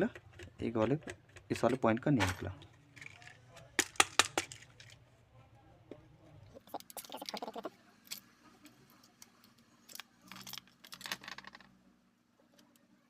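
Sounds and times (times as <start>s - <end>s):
plastic casing clicking and rattling: 0.0s - 5.0s.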